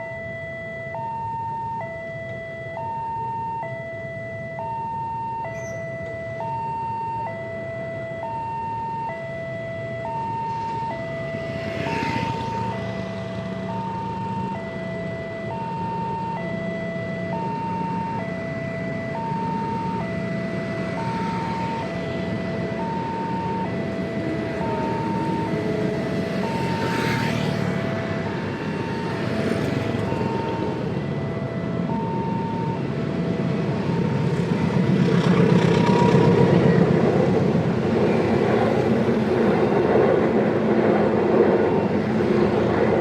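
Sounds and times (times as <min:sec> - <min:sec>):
road traffic: 0:00.0 - 0:43.0
vehicle whooshing past: 0:11.4 - 0:12.7
level crossing alarm two tones: 0:27.9 - 0:34.2.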